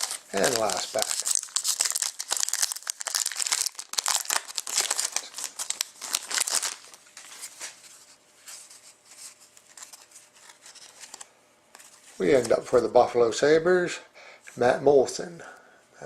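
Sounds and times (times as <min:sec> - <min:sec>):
wrapper tearing and crinkling: 0:00.0 - 0:07.5
cards rustling: 0:00.0 - 0:12.8.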